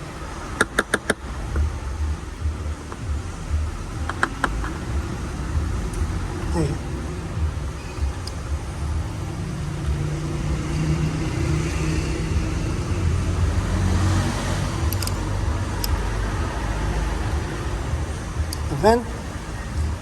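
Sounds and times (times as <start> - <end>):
low engine drone: 0.0 - 20.0
light clicks: 14.8 - 15.2.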